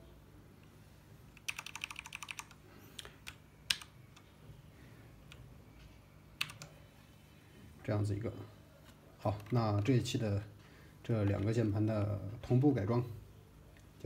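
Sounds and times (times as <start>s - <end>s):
mechanical keyboard typing: 1.4s - 4.3s, 6.4s - 6.7s.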